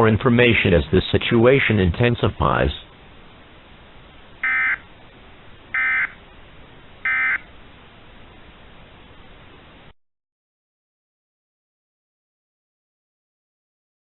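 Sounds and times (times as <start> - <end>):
steady low hiss: 0.0 - 10.0
digital data tone bursts: 4.4 - 4.8, 5.7 - 6.2, 7.0 - 7.4.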